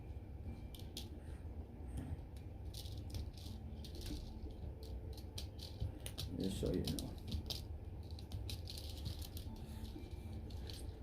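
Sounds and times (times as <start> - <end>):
small hard pieces clicking: 2.3 - 11.0.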